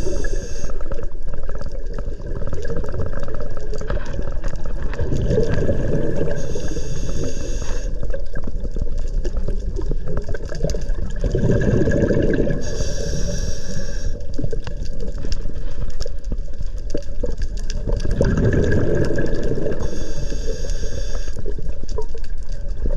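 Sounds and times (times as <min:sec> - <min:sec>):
regulator hiss on inhale: 0:00.0 - 0:01.1, 0:05.9 - 0:08.2, 0:12.3 - 0:14.4, 0:19.4 - 0:21.6
exhaled air bubbling underwater: 0:00.0 - 0:22.9.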